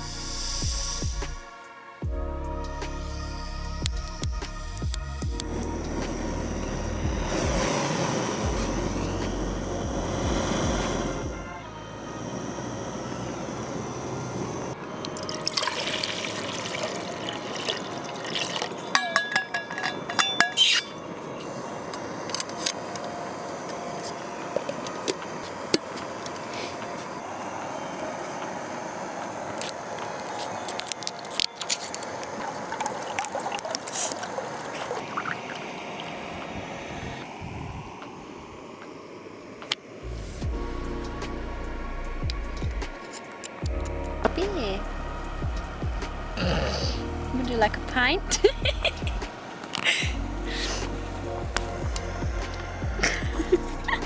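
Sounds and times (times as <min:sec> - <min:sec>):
scattered clicks: 0:03.8 - 0:06.2
liquid sloshing and trickling: 0:15.0 - 0:20.6, 0:30.8 - 0:36.5
sharp clinks and ringing knocks: 0:19.0 - 0:21.0.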